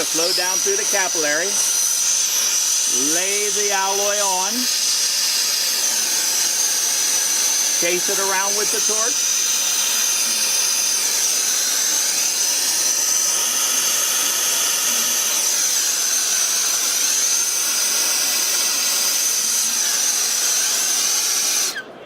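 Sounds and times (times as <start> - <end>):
gas torch hissing: 0.0 - 22.0.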